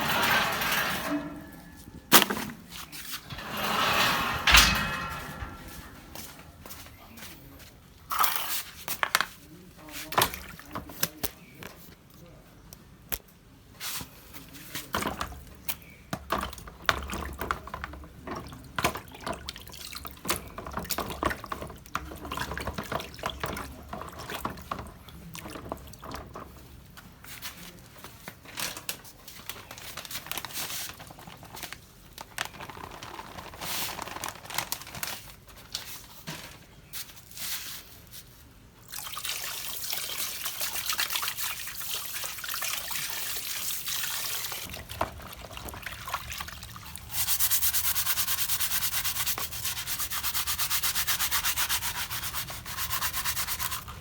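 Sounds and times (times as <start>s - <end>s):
sanding and scraping: 47.1s - 54.0s.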